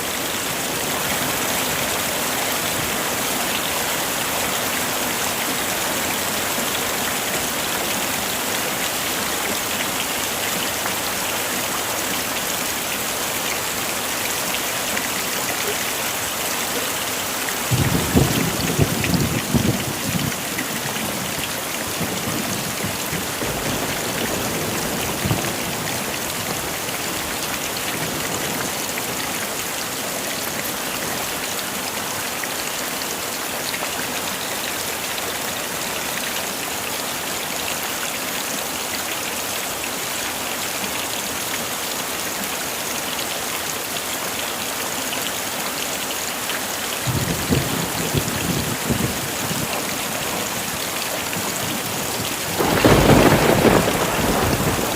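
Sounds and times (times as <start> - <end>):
heavy rain pouring: 0.0 - 54.9
low thunder rumbles: 17.7 - 20.5, 51.4 - 54.9.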